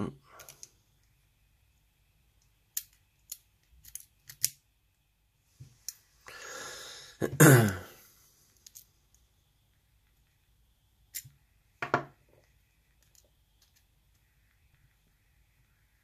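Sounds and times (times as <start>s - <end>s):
small metal parts clicking: 0.4s - 0.7s, 2.7s - 4.6s, 8.6s - 8.9s
person clearing throat: 7.2s - 8.0s.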